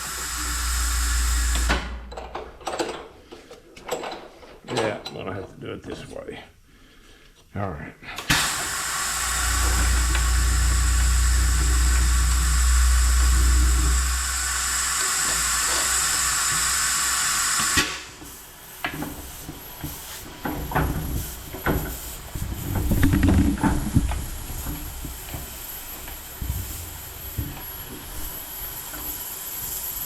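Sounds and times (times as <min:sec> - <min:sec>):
compressed air hiss: 0:00.0 - 0:02.1, 0:08.2 - 0:22.9, 0:24.1 - 0:30.0
deep hum: 0:00.0 - 0:02.7, 0:08.7 - 0:16.9, 0:22.4 - 0:29.1.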